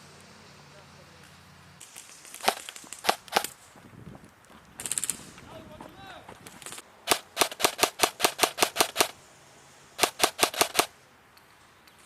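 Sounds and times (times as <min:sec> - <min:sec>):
airsoft rifle shots: 0:01.8 - 0:03.6, 0:04.8 - 0:05.7, 0:06.4 - 0:09.2, 0:10.0 - 0:10.9.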